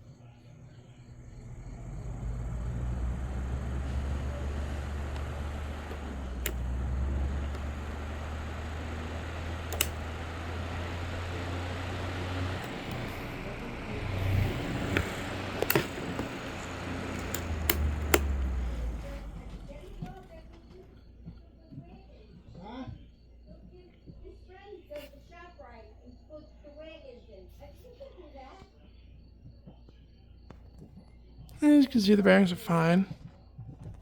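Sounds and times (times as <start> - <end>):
box fan motor humming: 1.0 - 20.6
sharp clicks: 3.4 - 20.3.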